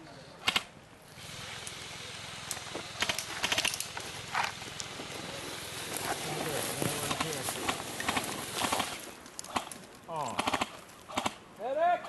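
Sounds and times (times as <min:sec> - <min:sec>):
footsteps on rough ground: 0:02.6 - 0:10.2
rustle of clothing and gear: 0:02.8 - 0:11.2.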